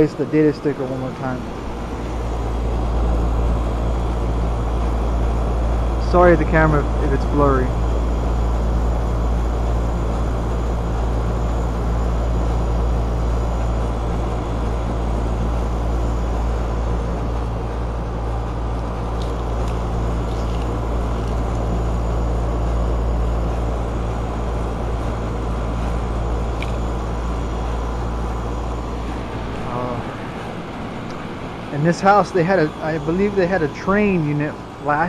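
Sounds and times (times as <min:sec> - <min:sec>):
air conditioner compressor hum: 0:00.0 - 0:35.0
condenser fan rushing: 0:00.0 - 0:35.0.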